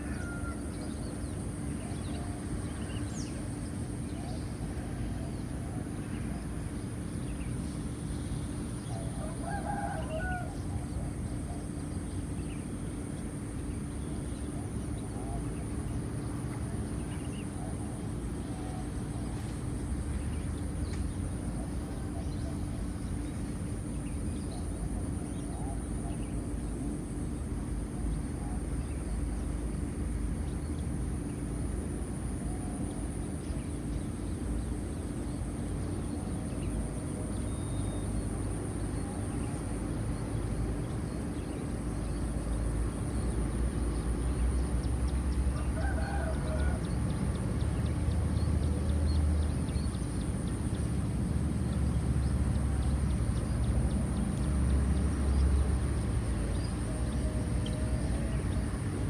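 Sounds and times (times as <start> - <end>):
rooster crowing: 0.0 - 1.0, 9.0 - 11.0, 45.5 - 47.2
high insect drone: 0.0 - 59.0.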